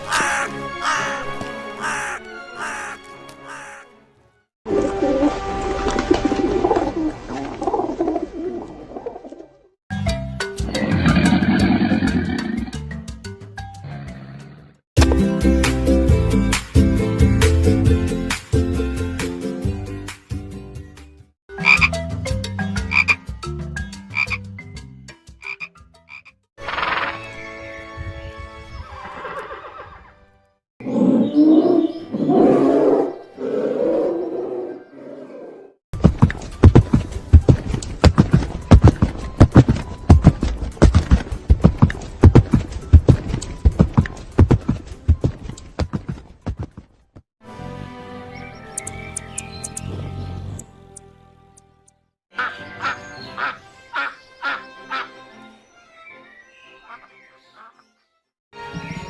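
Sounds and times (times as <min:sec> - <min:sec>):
frog croaking: 0:21.6 - 0:21.9, 0:25.4 - 0:27.0
horse hooves clip-clopping: 0:36.0 - 0:47.2.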